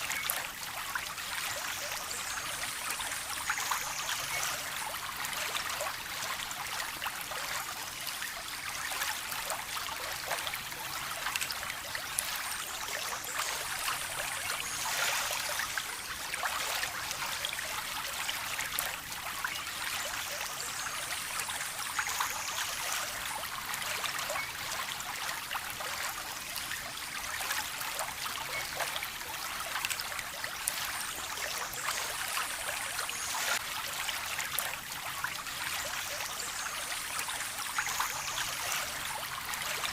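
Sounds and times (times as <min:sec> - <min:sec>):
small stream trickling: 0:00.0 - 0:39.9.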